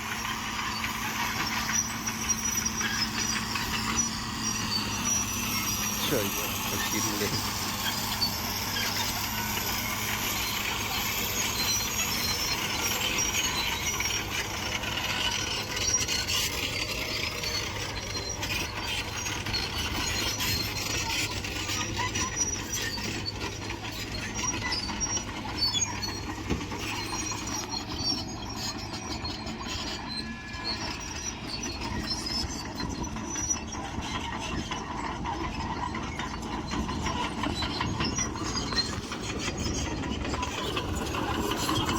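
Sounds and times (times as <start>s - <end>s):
bulldozer diesel engine: 0.0s - 41.9s
steel tracks squealing and clattering: 0.0s - 41.9s.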